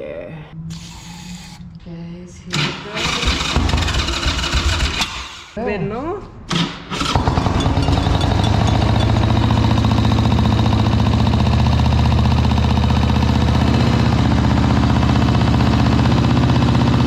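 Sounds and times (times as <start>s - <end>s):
motorcycle engine idling: 3.0s - 5.0s, 7.3s - 17.0s.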